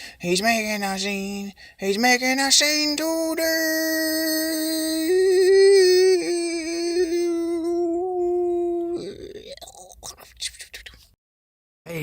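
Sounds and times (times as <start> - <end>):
person singing a held note: 5.0 - 9.5.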